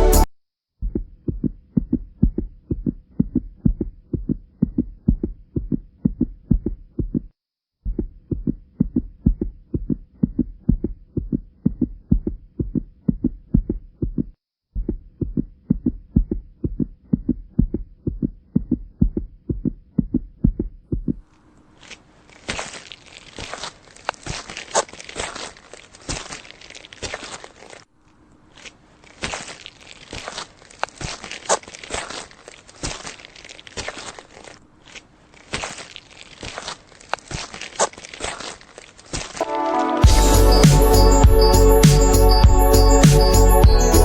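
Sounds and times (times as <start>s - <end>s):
muffled low thumping: 0.8s - 21.2s, 40.0s - 44.0s.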